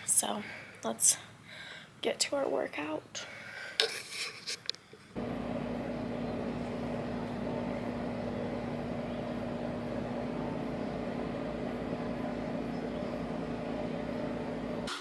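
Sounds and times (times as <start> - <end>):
mechanical hum: 5.2 - 15.0.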